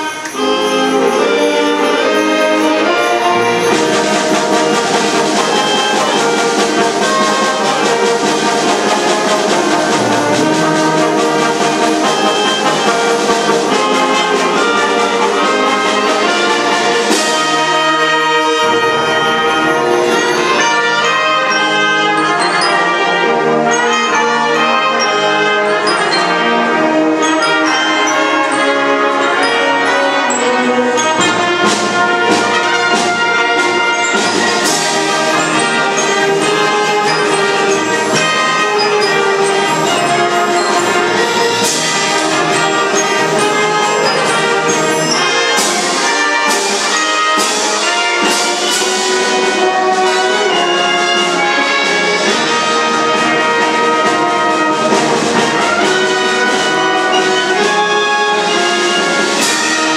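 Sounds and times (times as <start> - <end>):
wind band playing: 0.0 - 59.9.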